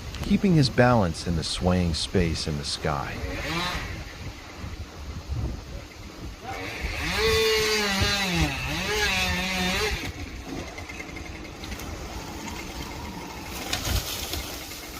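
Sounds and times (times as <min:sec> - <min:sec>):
chainsaw engine revving: 0:03.0 - 0:04.2, 0:06.4 - 0:14.9.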